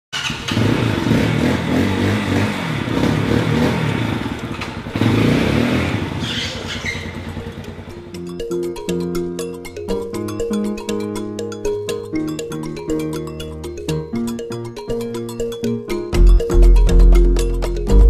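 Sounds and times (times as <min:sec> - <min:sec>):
motorcycle engine revving: 0:00.1 - 0:08.2.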